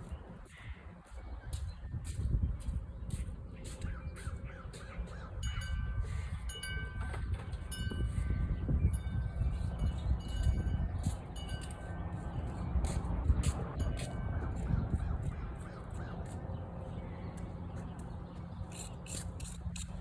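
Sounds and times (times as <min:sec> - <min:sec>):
high bird calls: 0:00.0 - 0:06.3
wire brush scrubbing: 0:18.7 - 0:20.0.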